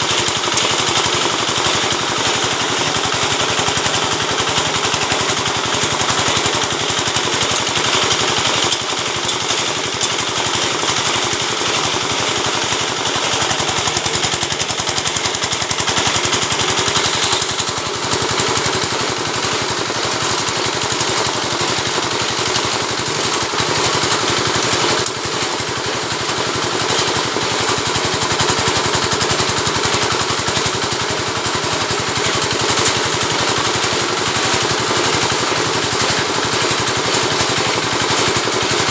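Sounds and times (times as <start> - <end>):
rapid mechanical rattle: 0.0 - 38.9
motor running: 15.9 - 17.9.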